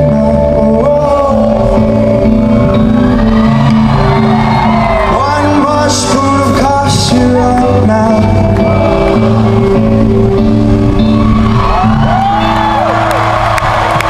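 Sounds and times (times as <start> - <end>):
person singing: 0.0 - 11.2
live rock band playing: 0.0 - 14.0.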